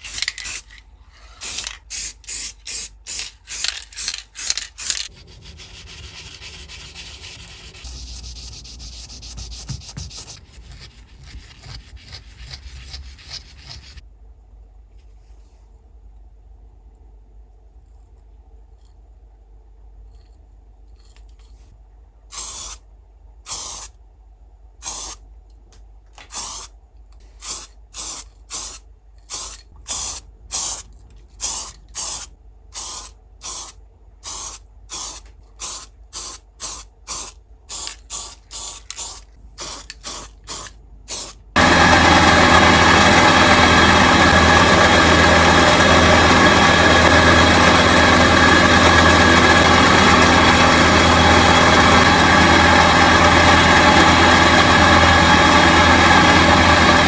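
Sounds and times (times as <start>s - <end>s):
loud steady machine noise: 5.0s - 10.0s, 41.6s - 57.0s
short hissing sprays: 22.3s - 22.8s, 23.5s - 23.9s, 24.8s - 25.2s, 26.3s - 30.8s, 31.4s - 41.4s.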